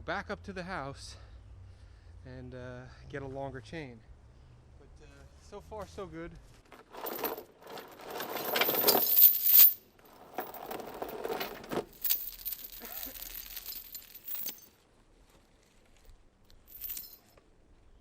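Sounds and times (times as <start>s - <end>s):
metal chain rattling and clinking: 6.8s - 14.7s, 16.6s - 17.3s.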